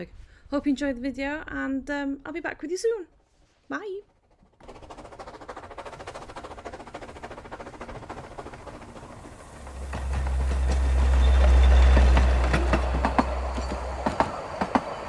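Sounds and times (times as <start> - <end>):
steam train running: 2.2 - 15.0
wheels clicking: 3.9 - 15.0
loud low rumble: 9.2 - 14.0.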